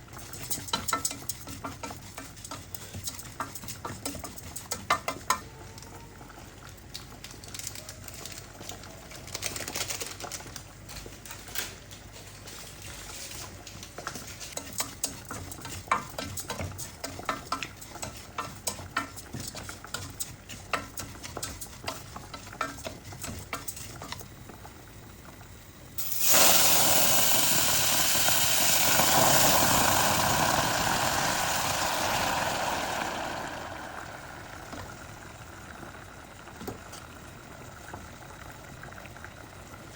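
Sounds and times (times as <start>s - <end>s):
liquid sizzling in hot pan: 0.0s - 5.4s, 25.9s - 39.9s
spoon stirring and scraping a pan: 0.1s - 5.4s, 12.7s - 24.3s.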